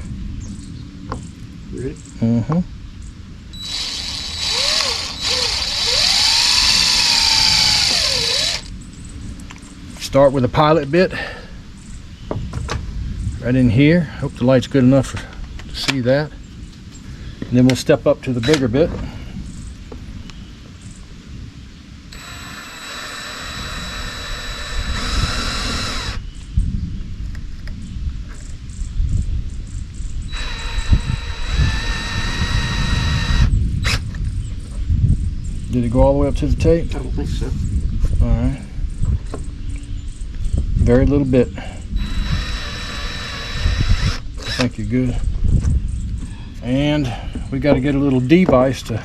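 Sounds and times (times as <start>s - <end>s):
electric drill running: 3.6s - 8.7s, 22.1s - 26.2s, 30.3s - 34.0s, 42.0s - 44.6s.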